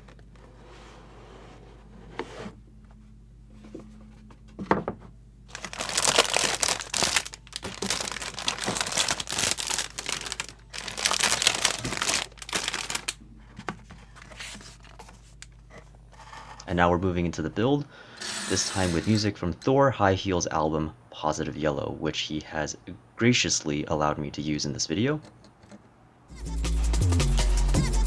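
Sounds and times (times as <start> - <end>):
plastic packaging crinkling and tearing: 5.5 - 13.2.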